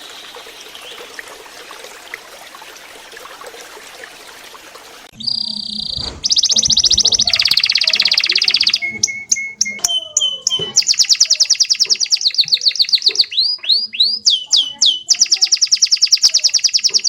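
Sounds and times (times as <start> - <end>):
canary singing trills: 5.1 - 17.0
faint chirps: 5.1 - 17.0.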